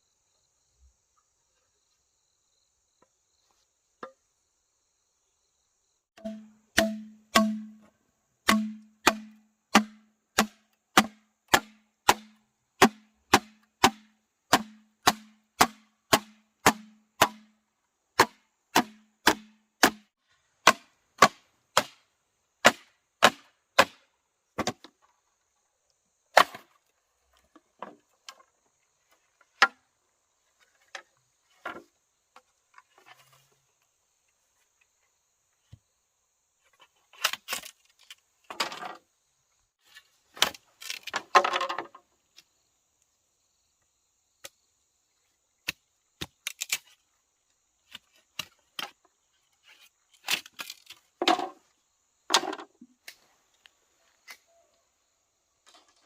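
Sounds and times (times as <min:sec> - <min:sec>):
sharp blows on wood: 0:06.2 - 0:17.6, 0:18.2 - 0:22.0, 0:22.6 - 0:24.0.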